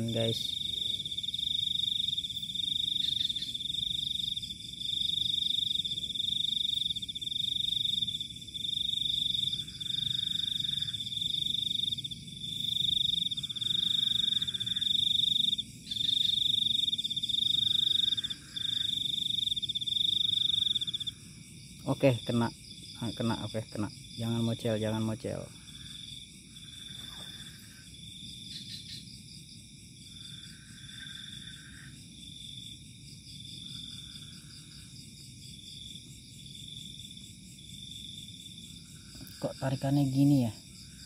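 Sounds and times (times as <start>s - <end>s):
lower frog calls: 0.0s - 29.1s, 30.0s - 32.4s
frogs and insects trilling: 0.0s - 41.0s.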